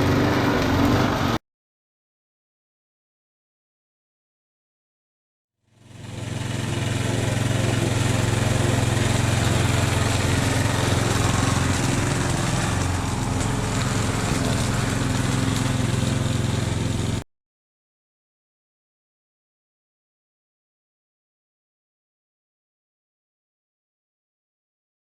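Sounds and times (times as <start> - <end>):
lawnmower engine running: 0.0 - 1.4, 5.7 - 17.2.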